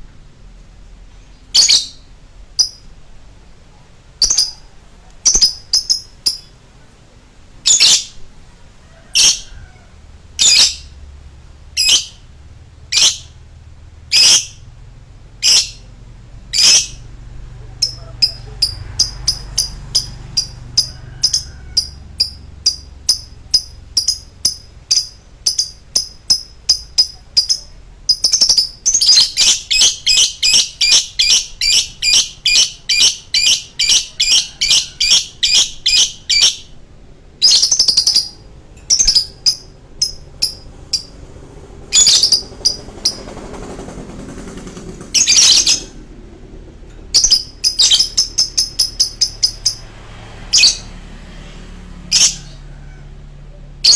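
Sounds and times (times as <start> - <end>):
lovebird chirping and trilling: 1.3 - 2.9, 4.2 - 6.6, 7.7 - 8.2, 9.1 - 9.5, 10.4 - 11.0, 11.7 - 12.3, 12.9 - 13.4, 14.1 - 14.7, 15.4 - 15.9, 16.5 - 17.1, 17.7 - 36.8, 37.4 - 41.2, 41.9 - 43.3, 45.1 - 46.0, 47.1 - 49.9, 50.5 - 50.9, 52.1 - 52.6.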